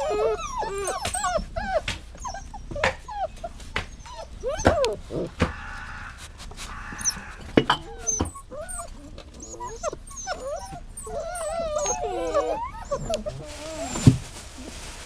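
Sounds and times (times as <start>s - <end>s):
dog whining and whimpering: 0.0s - 5.4s, 6.9s - 14.7s.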